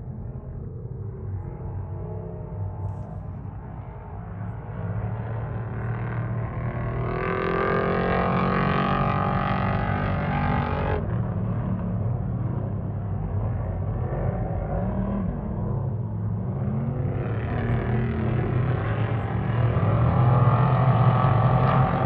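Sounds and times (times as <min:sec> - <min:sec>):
off-road vehicle engine revving: 0:05.8 - 0:11.1, 0:16.4 - 0:22.0.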